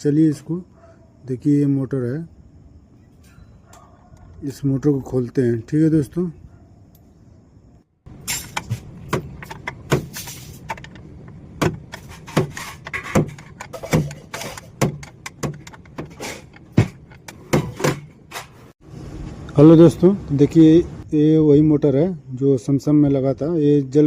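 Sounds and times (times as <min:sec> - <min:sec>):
tools clinking on metal parts: 0:08.2 - 0:18.6.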